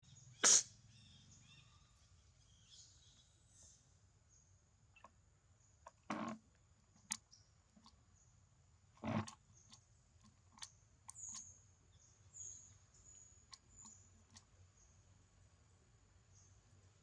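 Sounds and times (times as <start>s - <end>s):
monkey sneezing: 0.4s - 0.7s.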